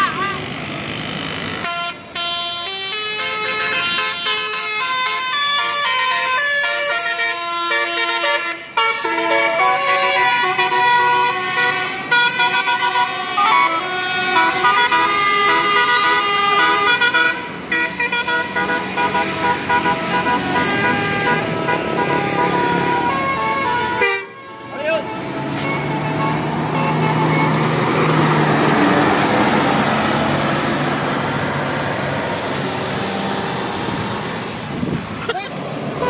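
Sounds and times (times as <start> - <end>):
vehicle horns honking: 1.6 - 27.8.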